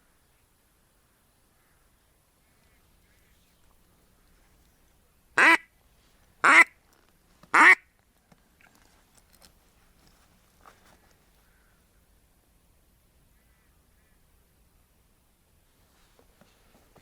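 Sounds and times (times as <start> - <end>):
faint small rustles: 1.6 - 5.1, 5.8 - 11.8, 15.7 - 17.0
duck quacking: 5.4 - 5.7, 6.4 - 6.8, 7.6 - 7.8.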